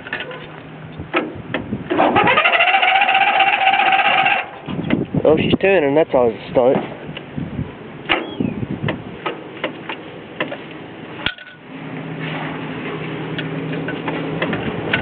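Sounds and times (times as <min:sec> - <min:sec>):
electric starter cranking engine: 0:01.9 - 0:04.5.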